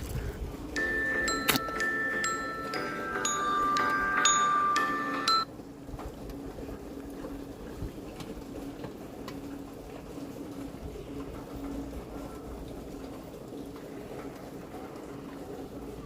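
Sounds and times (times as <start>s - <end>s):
chiming phone ringtone: 0.8s - 5.5s.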